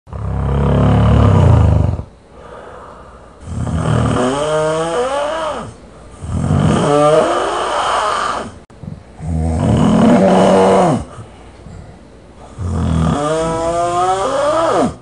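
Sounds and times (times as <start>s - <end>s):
person snoring loudly: 0.1s - 2.1s, 3.4s - 11.3s, 12.4s - 15.0s
wavering pitched groan: 4.7s - 11.3s, 12.6s - 15.0s.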